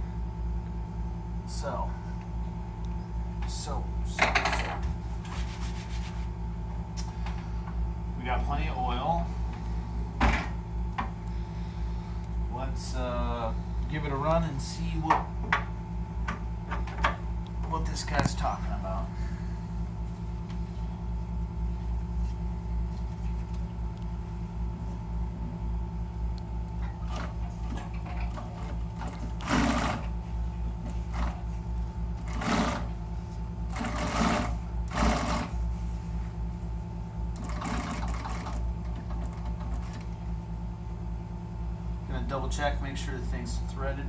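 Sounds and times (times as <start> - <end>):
sewing machine running: 27.0 - 30.1, 31.1 - 31.4, 32.2 - 32.9, 33.7 - 35.6, 37.4 - 40.0.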